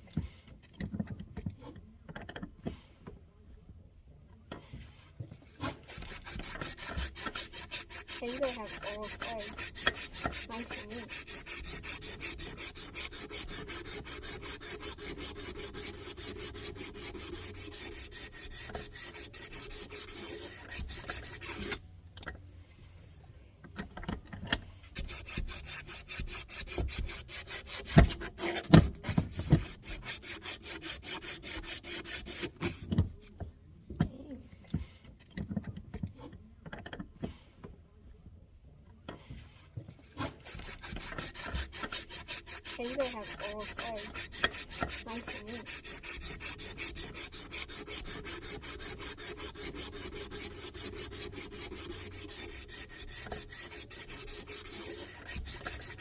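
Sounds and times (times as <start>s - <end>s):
faint rubbing: 4.6s - 21.8s, 39.2s - 56.0s
sandpaper strokes: 5.5s - 21.8s, 25.0s - 32.9s, 40.0s - 56.0s.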